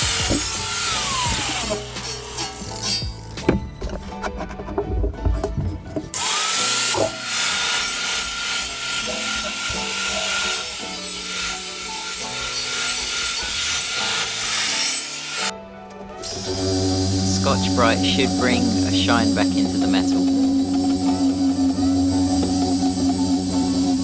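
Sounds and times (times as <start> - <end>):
power tool cutting aluminium: 0.0 - 3.6, 6.2 - 15.5, 16.2 - 24.0
knocks and scrapes: 2.6 - 6.2.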